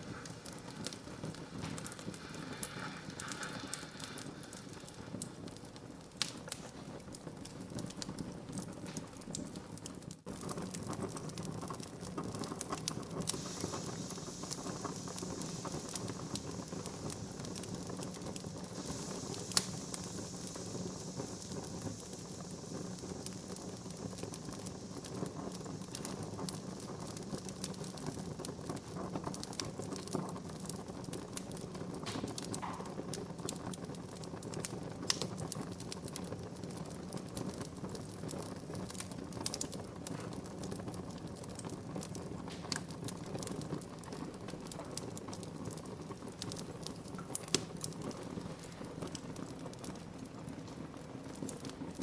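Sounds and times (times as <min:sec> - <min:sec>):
fire crackling: 0:00.0 - 0:52.0
fire hissing: 0:00.0 - 0:52.0
low rumble of flame: 0:00.0 - 0:52.0
sharp pop from fire: 0:06.2 - 0:06.9, 0:12.1 - 0:28.1, 0:31.2 - 0:33.9, 0:34.6 - 0:35.5, 0:42.4 - 0:43.5, 0:46.4 - 0:49.2.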